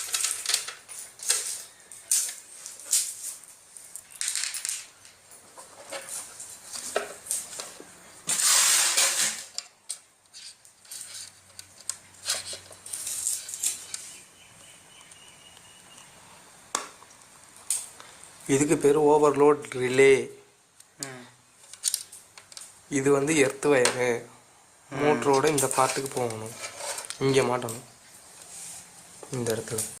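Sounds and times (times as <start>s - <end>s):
metal parts and tools clinking: 0.0s - 6.2s
metal scrape: 8.2s - 9.6s, 25.5s - 27.2s.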